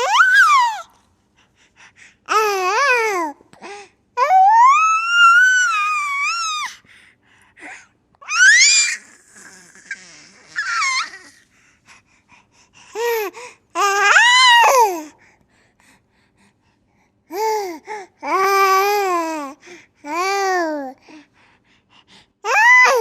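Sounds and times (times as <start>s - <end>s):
baby squealing and shrieking: 0.0s - 0.9s, 4.2s - 6.7s, 8.2s - 11.4s.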